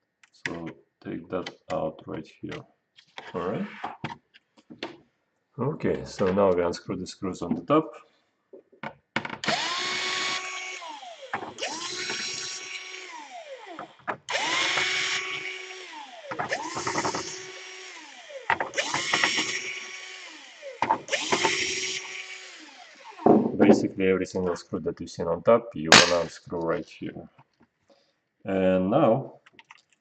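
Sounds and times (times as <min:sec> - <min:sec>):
electric screwdriver motor whine: 0:09.4 - 0:23.2.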